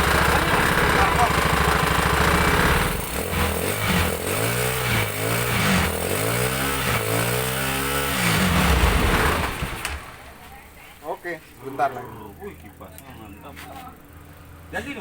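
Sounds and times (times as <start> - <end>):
motorcycle engine revving: 0.0 - 10.5.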